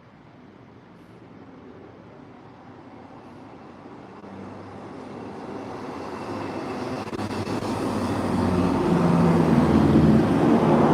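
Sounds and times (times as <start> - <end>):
engine approaching: 6.5 - 10.9
broad rushing noise: 6.6 - 10.9.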